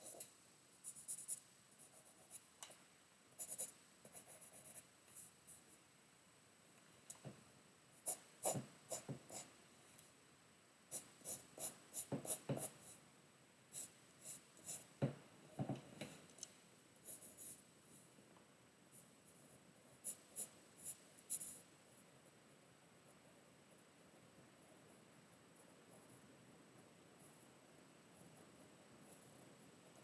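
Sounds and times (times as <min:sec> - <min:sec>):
pencil scratching on paper: 0:00.9 - 0:02.5, 0:03.4 - 0:05.7, 0:08.0 - 0:09.5, 0:10.9 - 0:13.0, 0:13.8 - 0:14.9.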